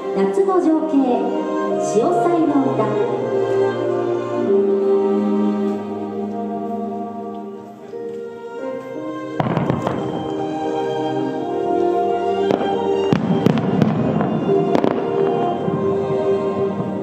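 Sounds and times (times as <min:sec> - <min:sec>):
music playing: 0:00.0 - 0:17.0
fireworks crackle: 0:09.4 - 0:10.4, 0:12.5 - 0:15.7
fireworks bursts: 0:09.4 - 0:10.6, 0:12.4 - 0:17.0.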